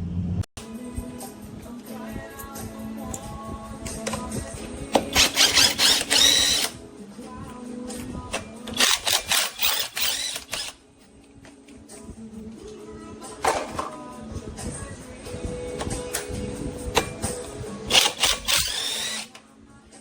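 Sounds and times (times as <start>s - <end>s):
background music: 0.6s - 20.0s
impact wrench rattling: 5.0s - 6.8s, 8.8s - 10.7s, 17.9s - 19.3s.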